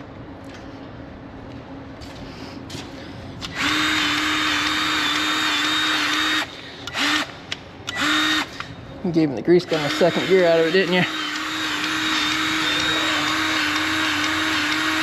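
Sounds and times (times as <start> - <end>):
grease gun motor whining: 9.7 - 15.0.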